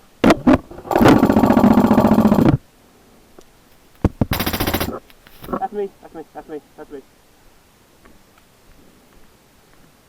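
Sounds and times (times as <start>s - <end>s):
airsoft gun full-auto bursts: 3.8s - 5.6s.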